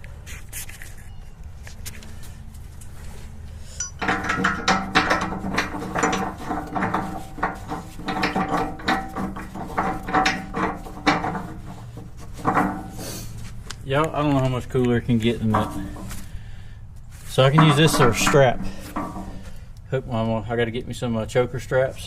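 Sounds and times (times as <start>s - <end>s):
steady metallic ringing: 3.7s - 13.4s, 17.3s - 20.2s
metal clanking against bucket: 3.8s - 13.4s, 15.2s - 16.4s, 17.3s - 19.7s.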